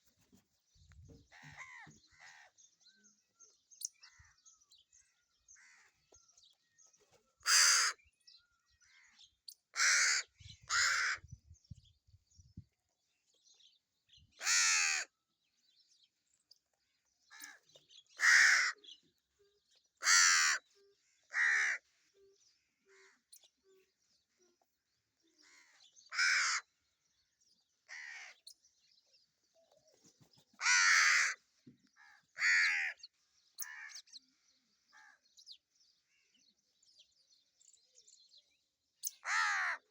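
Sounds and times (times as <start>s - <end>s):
crows cawing: 7.4s - 8.0s, 9.8s - 11.2s, 14.4s - 15.1s, 17.3s - 17.6s, 18.2s - 18.8s, 20.0s - 20.6s, 21.3s - 21.8s, 25.4s - 26.7s, 27.9s - 28.4s, 30.6s - 31.4s, 32.0s - 33.0s, 33.6s - 34.0s, 39.2s - 39.8s.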